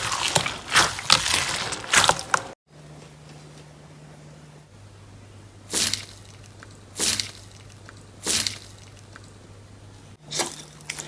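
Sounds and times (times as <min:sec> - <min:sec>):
slime squishing: 0:00.0 - 0:02.6.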